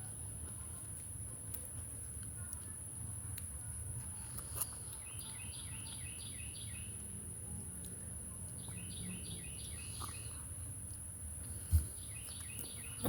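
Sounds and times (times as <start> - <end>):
songbird singing falling notes: 5.0 - 7.0, 8.5 - 10.3, 11.7 - 13.0.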